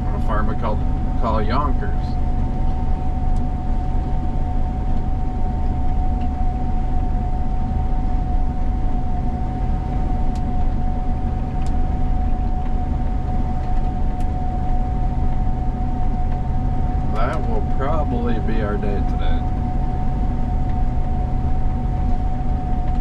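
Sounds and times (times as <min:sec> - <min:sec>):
combine harvester rumble: 0:00.0 - 0:23.0
high whine: 0:00.0 - 0:23.0.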